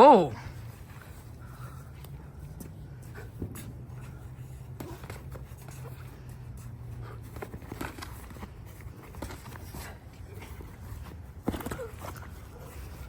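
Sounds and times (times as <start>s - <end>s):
thumps of punches and footwork: 11.3s - 12.3s.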